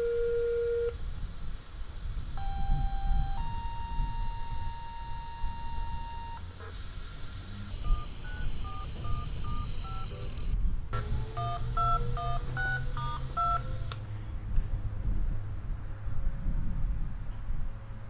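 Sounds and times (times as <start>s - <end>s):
two-note touch-tone beeps: 0.0s - 0.9s, 2.4s - 6.4s.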